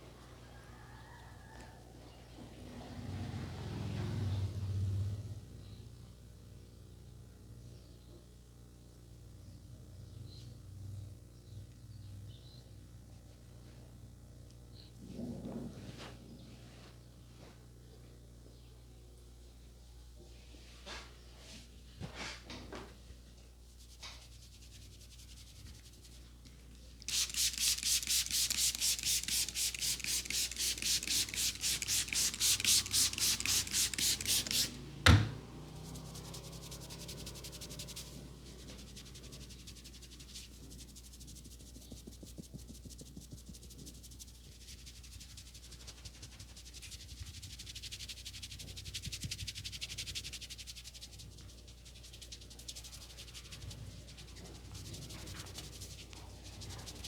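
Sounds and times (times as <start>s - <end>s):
hands rubbing hair and scalp: 27.1s - 57.0s.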